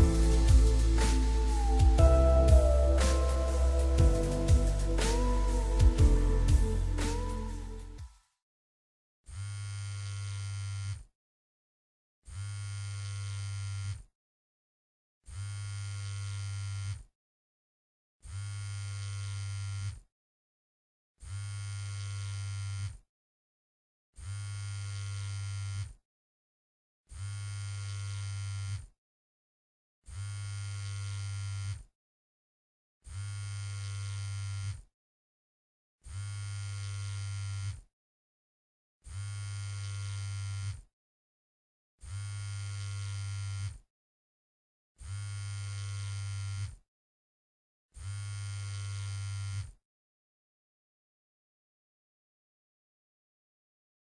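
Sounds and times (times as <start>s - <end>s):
mobile phone vibrating: 9.3s - 11.1s, 12.3s - 14.0s, 15.3s - 17.1s, 18.2s - 20.1s, 21.2s - 23.0s, 24.2s - 26.0s, 27.1s - 28.9s, 30.1s - 31.8s, 33.1s - 34.8s, 36.1s - 37.9s, 39.1s - 40.8s, 42.0s - 43.8s, 45.0s - 46.8s, 48.0s - 49.8s.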